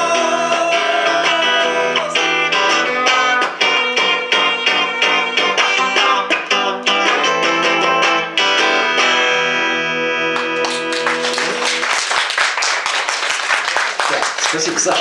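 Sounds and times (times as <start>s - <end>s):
guitar strumming: 0.0s - 11.9s
applause: 10.4s - 15.0s.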